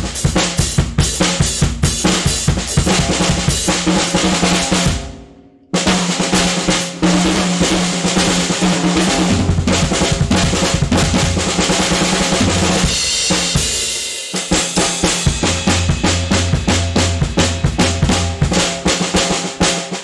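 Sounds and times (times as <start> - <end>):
bass drum: 0.0 - 5.1, 7.2 - 13.8, 14.5 - 19.4
snare drum rolls: 5.8 - 20.0.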